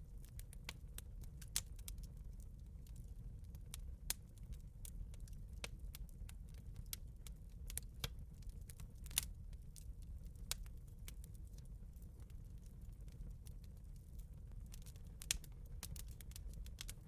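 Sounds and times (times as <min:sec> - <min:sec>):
campfire crackling: 0:00.1 - 0:17.0.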